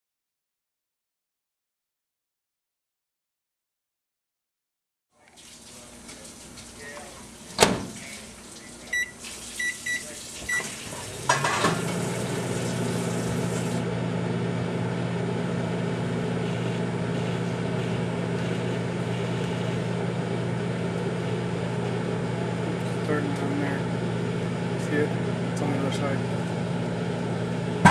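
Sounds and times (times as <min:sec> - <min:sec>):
microwave oven humming: 0:05.2 - 0:27.9
microwave keypad beeping: 0:08.9 - 0:10.8.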